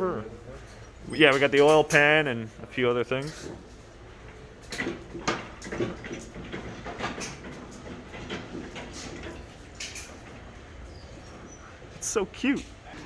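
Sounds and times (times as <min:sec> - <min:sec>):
metal engine parts clanking: 0:00.6 - 0:10.6.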